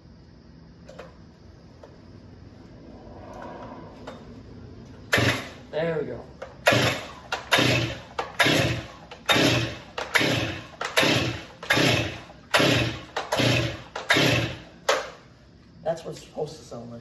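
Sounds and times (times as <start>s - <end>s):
chainsaw engine revving: 5.1s - 5.7s, 6.6s - 15.2s.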